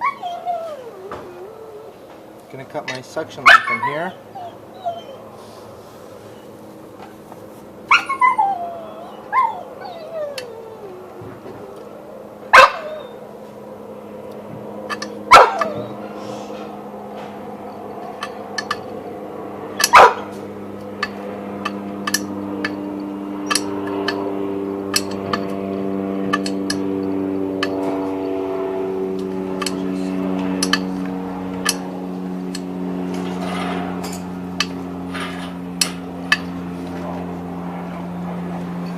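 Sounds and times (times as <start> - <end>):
steady hum: 0.4 - 38.9
dog barking: 3.4 - 4.0, 12.5 - 13.2, 15.3 - 16.0, 19.8 - 20.3.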